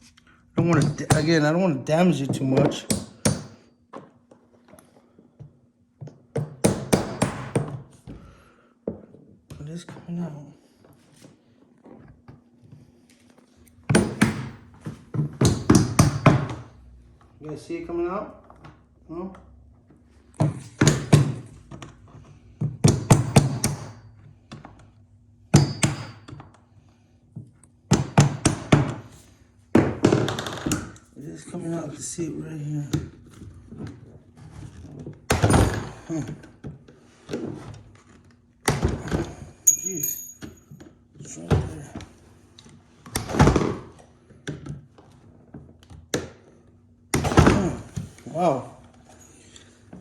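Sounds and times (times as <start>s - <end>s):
hammer tapping on a nail: 2.6s - 3.6s.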